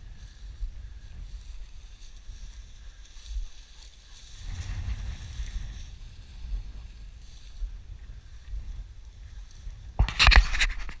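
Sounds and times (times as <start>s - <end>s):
wind rumbling on microphone: 0.0s - 11.0s
loud burst of rustling: 4.3s - 7.8s.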